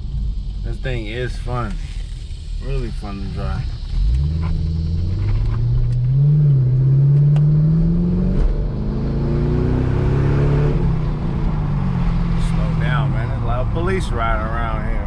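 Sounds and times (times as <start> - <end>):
car engine accelerating hard: 2.7 - 15.0.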